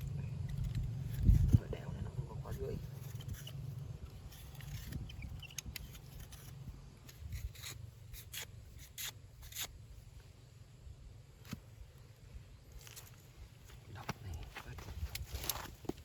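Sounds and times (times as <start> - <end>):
steady low rumble: 0.0 - 8.7
camping gear scrapes and clicks: 0.0 - 10.1, 12.7 - 16.0.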